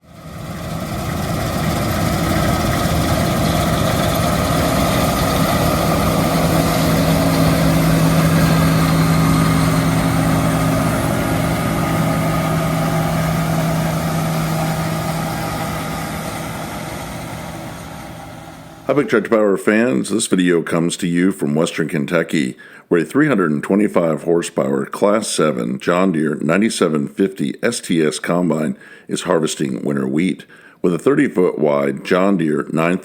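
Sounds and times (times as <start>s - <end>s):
combine harvester diesel drone: 0.0s - 19.3s.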